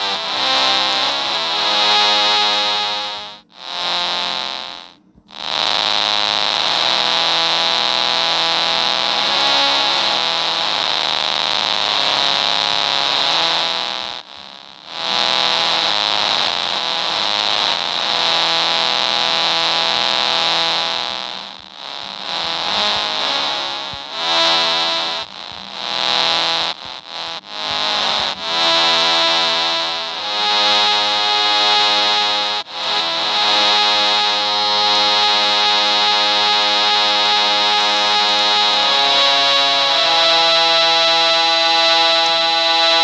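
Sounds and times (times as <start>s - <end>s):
sustained electronic synth tones: 0.0s - 43.0s.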